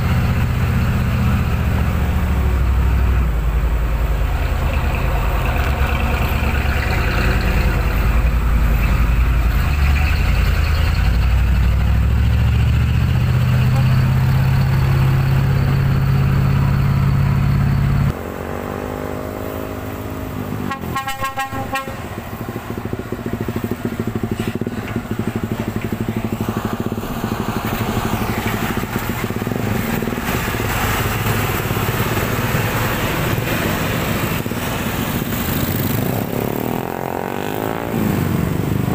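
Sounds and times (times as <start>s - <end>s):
diesel truck engine running: 0.0s - 18.2s, 20.0s - 38.9s
road traffic: 0.0s - 38.9s
vehicle horn toot: 20.6s - 22.2s.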